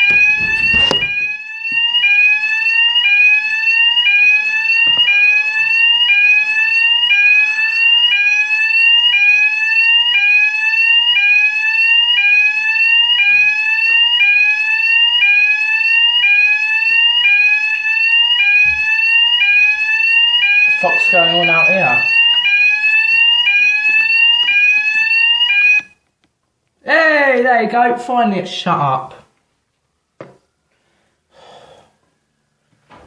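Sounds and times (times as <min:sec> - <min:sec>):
fire alarm whooping: 0:00.0 - 0:26.0.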